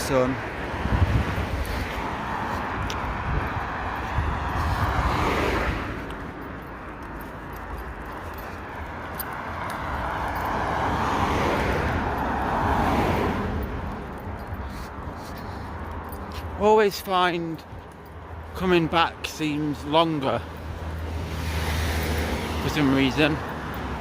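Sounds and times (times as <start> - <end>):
cars passing: 0.0 - 24.0
wind rumble on microphone: 0.7 - 6.2.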